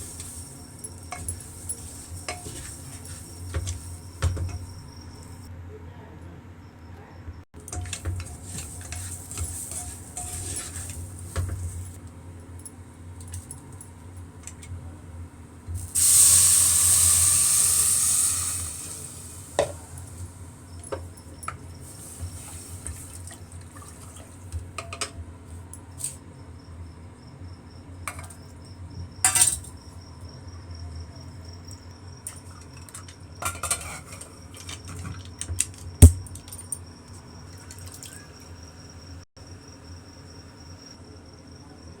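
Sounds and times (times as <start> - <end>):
metal utensils clinking on pots: 0.0 - 5.4, 7.6 - 12.0, 29.3 - 29.7, 32.6 - 35.2
loud rushing hiss: 15.9 - 19.3.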